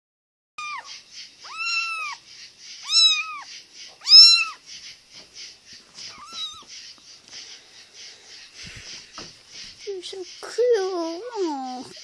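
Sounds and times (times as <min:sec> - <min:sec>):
kittens meowing: 0:00.6 - 0:02.2, 0:02.8 - 0:04.6, 0:06.0 - 0:06.7.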